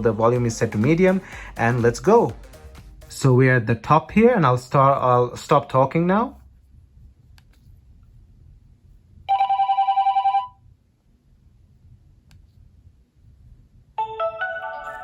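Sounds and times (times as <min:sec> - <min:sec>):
fast-pulsing two-tone phone ring: 0:09.3 - 0:10.6
melodic synthesized ringtone: 0:14.0 - 0:15.0.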